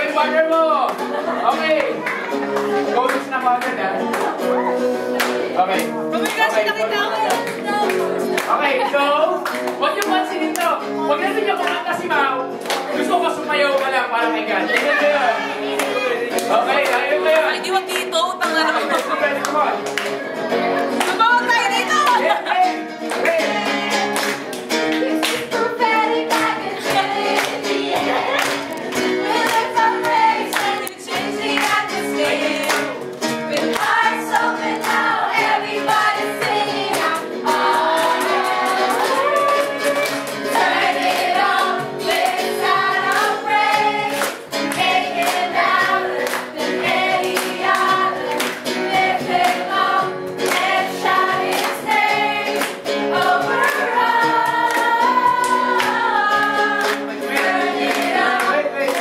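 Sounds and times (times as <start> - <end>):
group singing worship song: 14.4 - 17.6, 18.7 - 21.3, 22.2 - 59.0.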